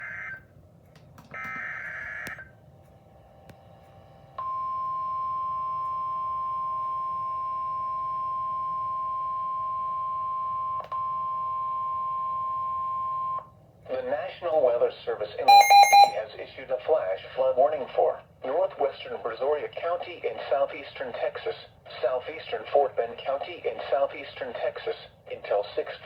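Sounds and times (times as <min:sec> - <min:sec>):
long steady attention tone: 0:15.5 - 0:16.2.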